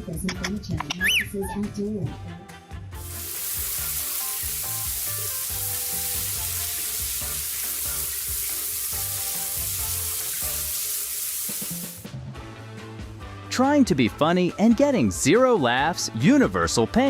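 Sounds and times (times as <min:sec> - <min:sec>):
steady hiss: 0:03.0 - 0:12.0.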